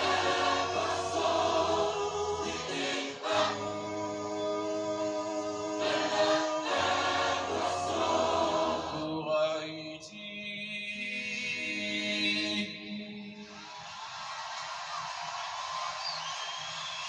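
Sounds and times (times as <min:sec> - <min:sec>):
gospel choir singing a cappella: 0:00.0 - 0:13.6.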